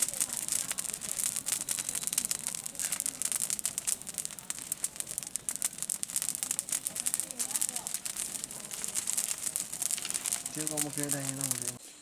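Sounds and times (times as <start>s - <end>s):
dry rice stalks rustling: 0.0s - 12.0s.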